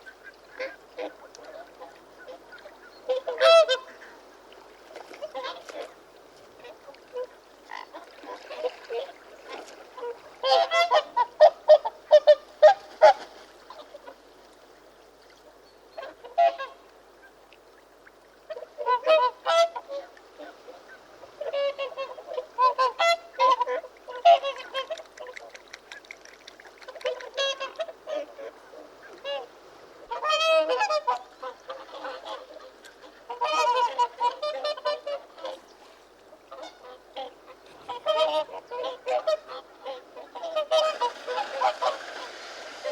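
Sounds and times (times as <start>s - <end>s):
swans calling: 20.9s - 42.9s.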